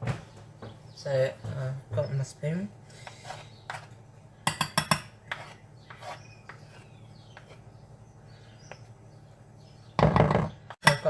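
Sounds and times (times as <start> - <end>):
spoon scraping utensils: 3.0 - 7.7.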